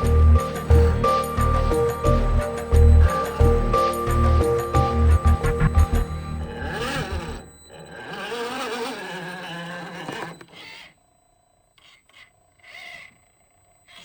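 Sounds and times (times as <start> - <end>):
background music: 0.0 - 7.5
rasping scraping bursts: 0.0 - 10.9.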